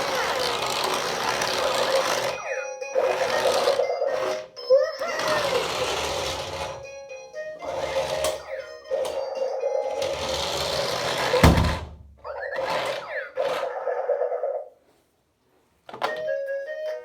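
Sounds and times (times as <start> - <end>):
toy car motor whirring: 0.0 - 6.9, 7.6 - 8.5, 9.9 - 11.8, 12.5 - 14.0.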